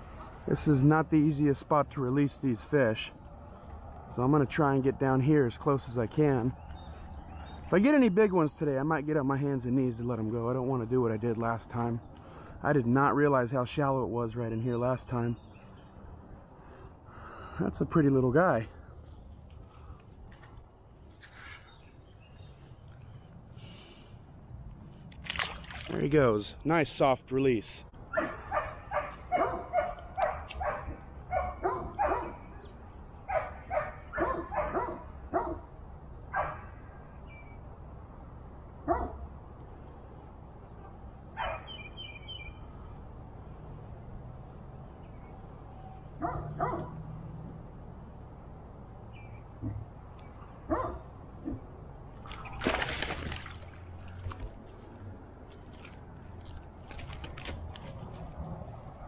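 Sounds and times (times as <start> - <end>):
dog barking: 28.1 - 32.5, 33.3 - 35.7, 36.3 - 36.7, 38.8 - 39.2, 41.4 - 41.8, 46.2 - 47.0, 50.7 - 51.6.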